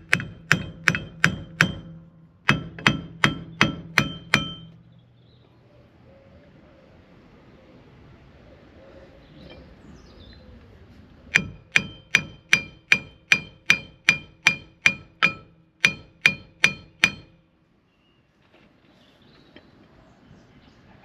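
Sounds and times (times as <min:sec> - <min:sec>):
hammer striking steel: 0:00.0 - 0:05.0, 0:11.3 - 0:17.4.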